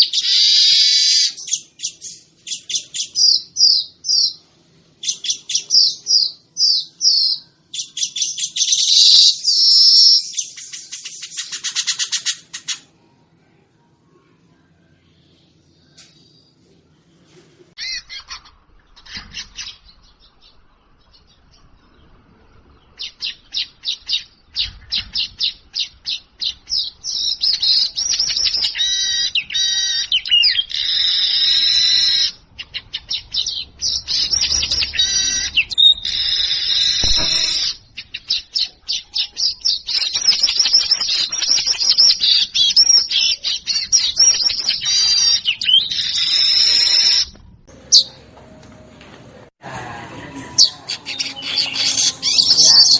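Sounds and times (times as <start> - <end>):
weaver bird singing: 19.3 - 47.2.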